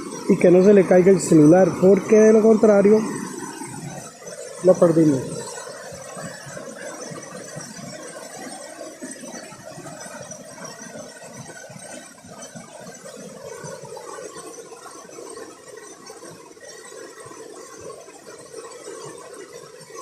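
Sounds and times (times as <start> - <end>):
waterfall rushing: 4.6 - 5.6.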